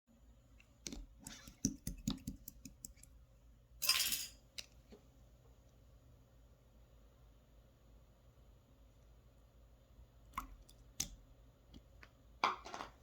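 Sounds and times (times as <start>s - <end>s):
slime squelch: 0.6s - 3.2s.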